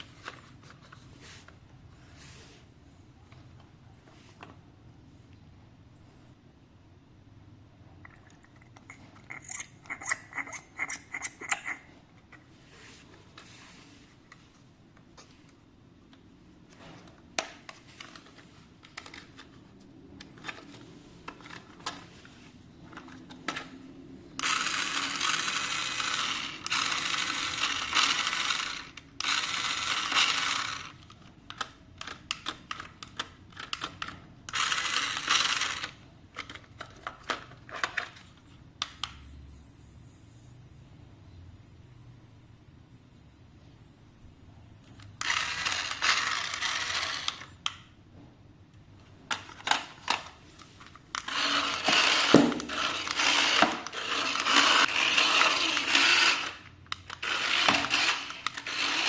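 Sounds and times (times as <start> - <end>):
plastic toy parts clicking: 24.4 - 38.2, 45.2 - 47.9, 51.1 - 59.0.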